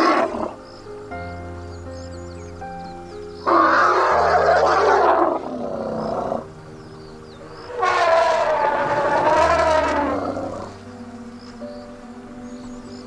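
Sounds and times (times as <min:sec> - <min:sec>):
drawn-out animal calls: 0:00.0 - 0:00.6, 0:03.4 - 0:06.6, 0:07.3 - 0:10.8
background music: 0:00.0 - 0:13.0.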